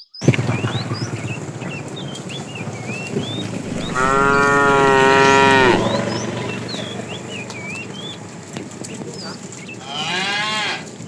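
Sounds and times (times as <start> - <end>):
cow mooing: 3.5 - 6.5.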